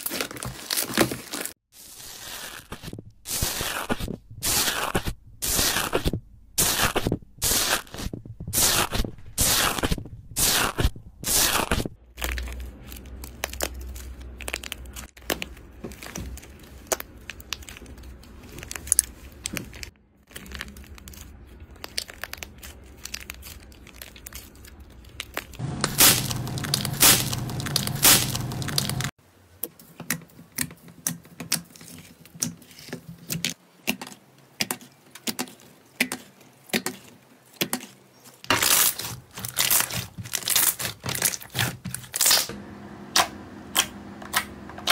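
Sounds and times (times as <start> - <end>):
slime crackling and popping: 2.6 - 29.1, 38.5 - 42.5.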